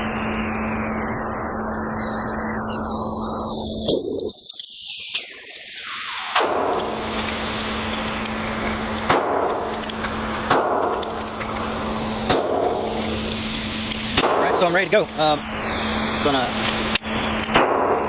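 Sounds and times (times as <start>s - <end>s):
steady low hum: 0.0s - 18.0s
gunshots with ringing tail: 10.5s - 11.0s, 14.2s - 14.7s, 17.5s - 18.0s.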